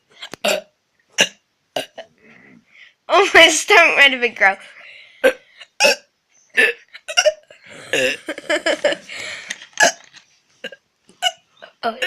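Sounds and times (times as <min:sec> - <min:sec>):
person burping: 0:00.2 - 0:02.2, 0:05.2 - 0:08.7, 0:09.8 - 0:11.4.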